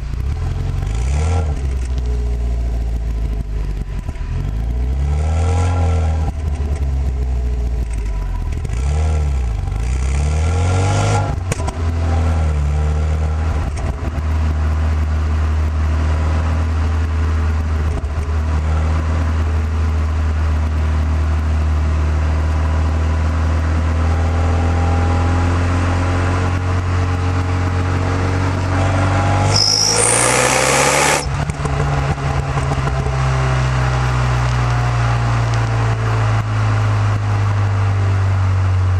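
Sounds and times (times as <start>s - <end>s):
car engine running: 26.5s - 37.7s.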